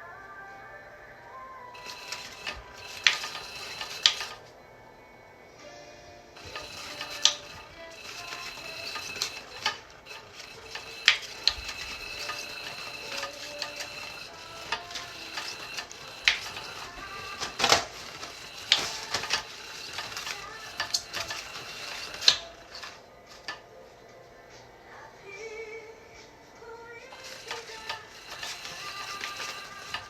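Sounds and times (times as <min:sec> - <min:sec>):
faint background music: 0:00.0 - 0:30.0
plastic toy clattering and knocking: 0:01.8 - 0:04.4, 0:06.4 - 0:23.6, 0:27.1 - 0:30.0
toy motor running: 0:01.8 - 0:04.5, 0:06.4 - 0:23.6, 0:27.1 - 0:30.0.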